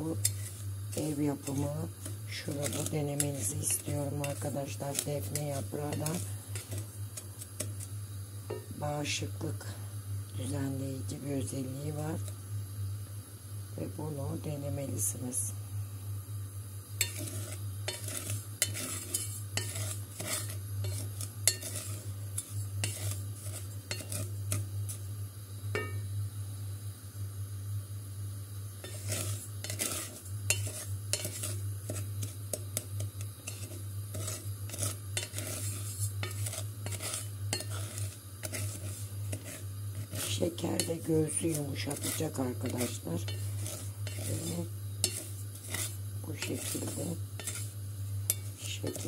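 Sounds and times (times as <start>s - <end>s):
spoon scraping sugar in pot: 0.0s - 8.7s, 17.0s - 25.1s, 25.7s - 26.0s, 28.8s - 49.0s
steady low hum: 0.0s - 49.0s.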